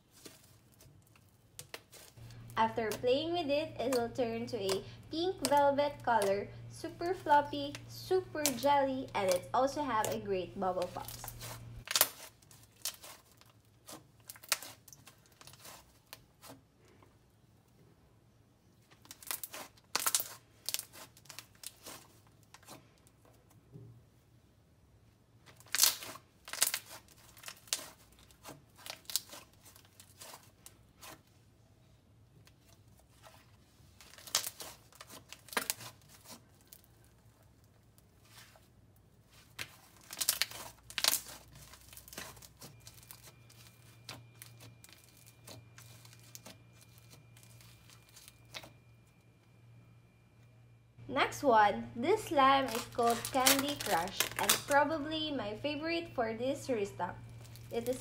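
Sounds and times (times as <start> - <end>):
slime popping and crackling: 7.1 - 16.5, 19.1 - 22.8, 25.4 - 31.1, 34.0 - 37.4, 39.6 - 48.7, 52.2 - 54.9.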